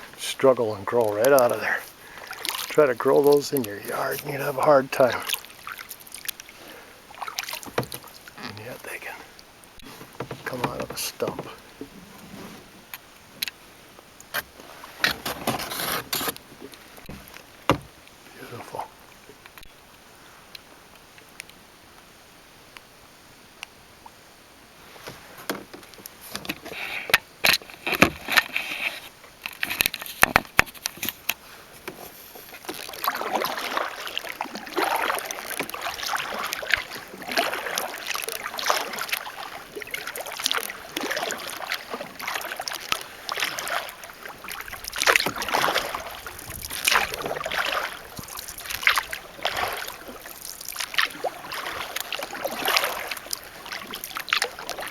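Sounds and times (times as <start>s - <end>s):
paddle strokes splashing water: 0.0s - 22.1s, 23.8s - 54.9s
sharp knocks and clicks: 17.0s - 17.9s.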